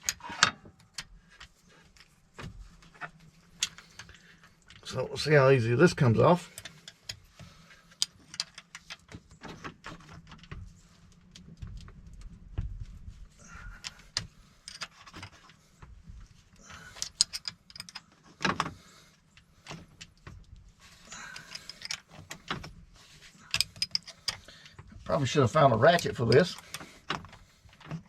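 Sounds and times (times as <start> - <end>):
wrench clinking on metal nut: 23.5 - 24.4.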